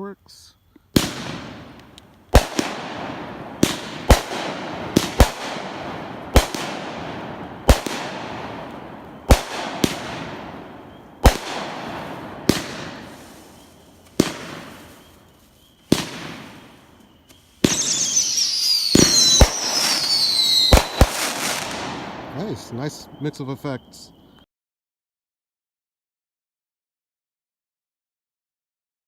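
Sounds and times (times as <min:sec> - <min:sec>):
firework hiss and crackle: 0:00.3 - 0:24.1
firework bangs: 0:00.9 - 0:24.2
high falling whistle: 0:16.4 - 0:21.7.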